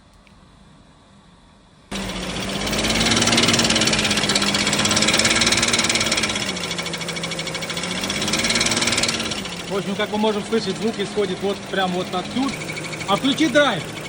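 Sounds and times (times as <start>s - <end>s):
engine running: 1.9s - 14.0s
fast metallic knocking clatter: 1.9s - 14.0s.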